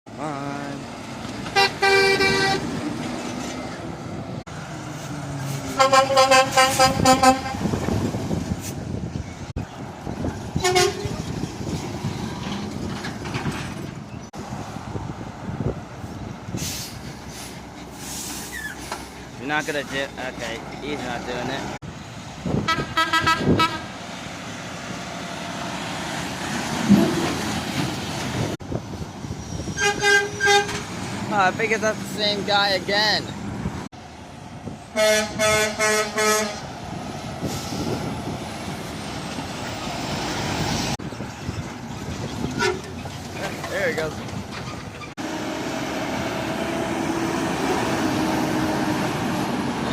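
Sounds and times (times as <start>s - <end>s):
traffic rumble: 0.1s - 49.9s
truck horn toots: 1.5s - 2.8s, 5.7s - 7.8s, 10.6s - 11.2s, 22.6s - 23.9s, 29.8s - 30.8s, 34.9s - 36.7s, 42.6s - 43.0s.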